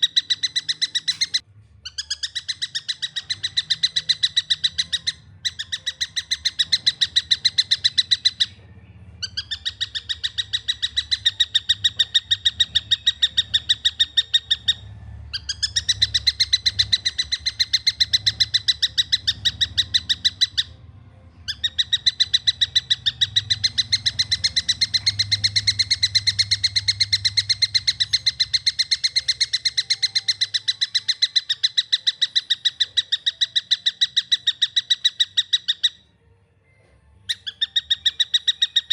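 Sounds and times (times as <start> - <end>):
kingfisher chirping: 0.0 - 20.8, 21.4 - 36.1, 37.3 - 38.9.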